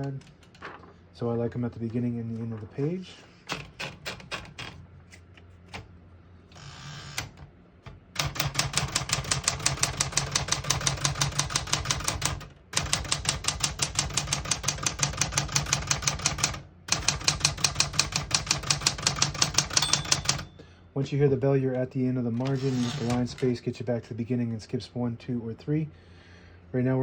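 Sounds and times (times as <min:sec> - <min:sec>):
typewriter typing: 0:03.5 - 0:04.8, 0:08.2 - 0:20.5, 0:22.4 - 0:23.6.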